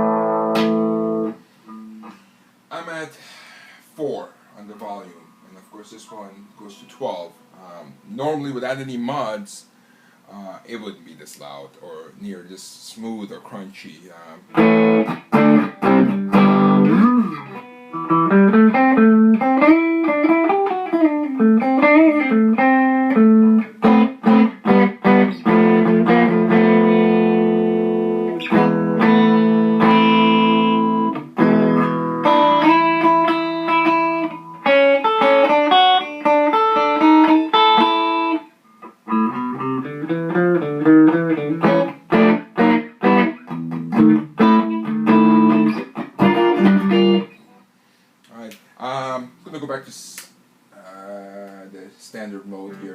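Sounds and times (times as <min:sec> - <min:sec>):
crunchy electric guitar: 0:00.0 - 0:02.3, 0:14.5 - 0:47.5.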